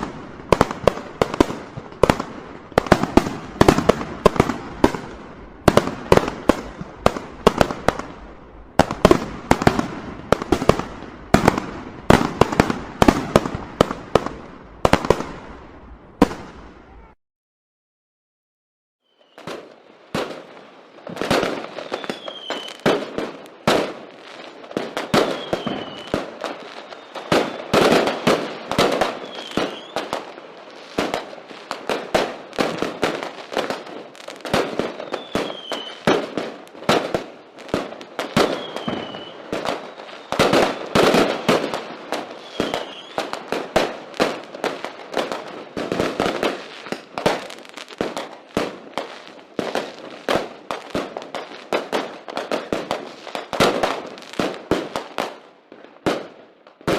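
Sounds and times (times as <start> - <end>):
fireworks bangs and crackling: 0.0 - 17.2, 19.1 - 56.9
firework falling whistles: 19.0 - 19.8, 21.4 - 22.8, 24.9 - 28.2, 29.0 - 30.1, 34.9 - 36.2, 38.3 - 41.6, 42.3 - 43.4.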